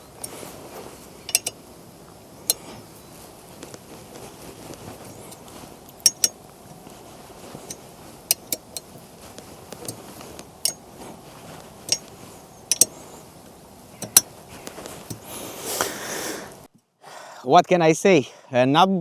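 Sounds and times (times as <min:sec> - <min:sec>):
metallic clicks of hand tools: 0:01.2 - 0:01.6, 0:05.3 - 0:06.8, 0:07.6 - 0:09.0, 0:09.7 - 0:10.8, 0:11.9 - 0:12.1, 0:12.7 - 0:13.0, 0:14.0 - 0:14.3.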